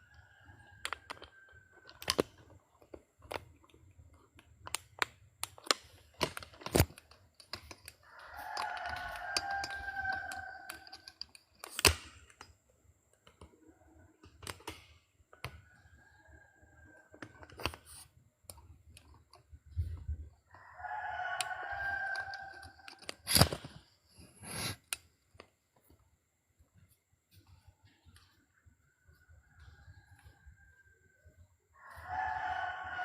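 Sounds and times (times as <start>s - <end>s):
rooster crowing: 8.1s - 11.2s, 20.5s - 23.0s, 31.8s - 33.0s.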